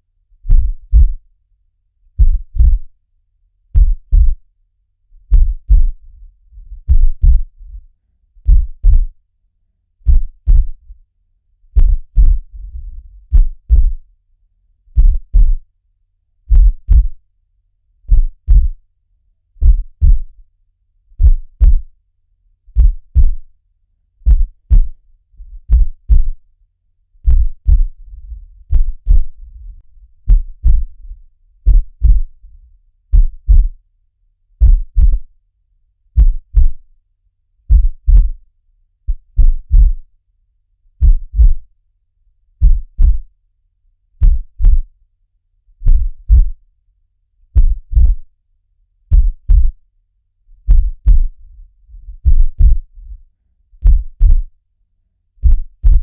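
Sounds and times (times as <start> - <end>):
heartbeat thumps: 0.5 - 1.2, 2.2 - 2.9, 3.8 - 4.4, 5.3 - 6.0, 6.6 - 7.8, 8.4 - 9.2, 10.0 - 10.9, 11.8 - 14.0, 15.0 - 15.6, 16.5 - 17.2, 18.1 - 18.8, 19.6 - 20.4, 21.2 - 21.9, 22.7 - 23.5, 24.2 - 26.4, 27.2 - 32.4, 33.1 - 33.8, 34.6 - 35.3, 36.2 - 36.8, 37.7 - 38.4, 39.1 - 40.1, 41.0 - 41.7, 42.6 - 43.3, 44.2 - 44.9, 45.8 - 46.6, 47.6 - 48.3, 49.1 - 49.8, 50.6 - 53.2, 53.8 - 54.5, 55.4 - 56.0.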